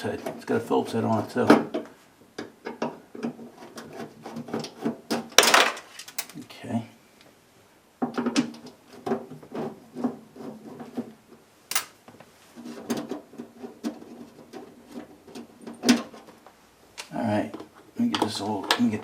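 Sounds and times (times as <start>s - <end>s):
nut driver clicking and scraping: 11.7s - 12.0s.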